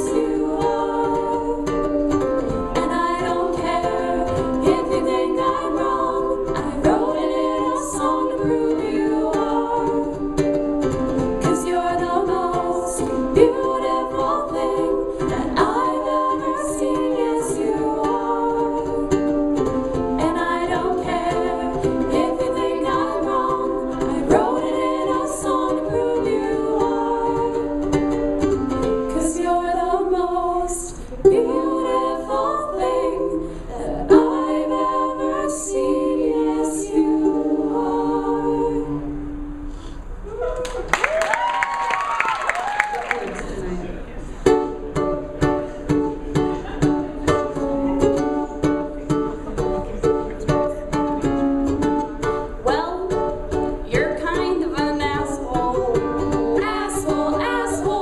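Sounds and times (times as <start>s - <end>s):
voices singing sustained notes: 0.0s - 40.3s, 52.4s - 58.0s
strummed ukulele: 0.0s - 58.0s.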